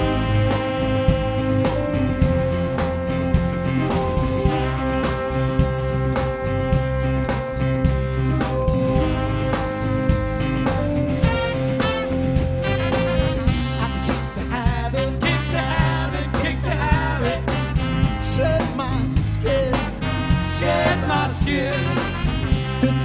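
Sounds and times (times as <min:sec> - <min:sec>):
bass: 0:00.0 - 0:23.0
pitch-bending lead melody: 0:00.0 - 0:23.0
drum beat: 0:10.1 - 0:19.3.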